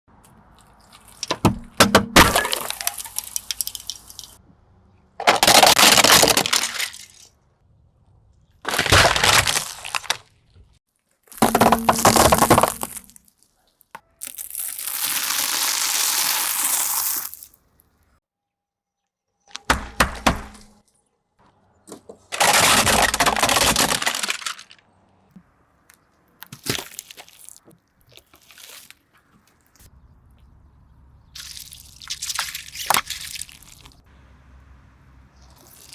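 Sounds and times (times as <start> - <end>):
car tyre crushing objects: 0.2 - 4.4, 8.6 - 13.4, 22.2 - 30.0.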